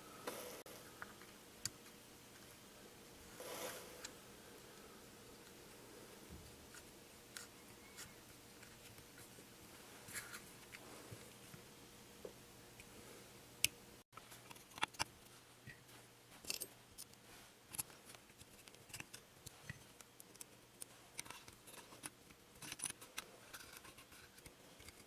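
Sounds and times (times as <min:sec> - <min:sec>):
small metal parts and tools clicking: 0:16.4 - 0:25.0.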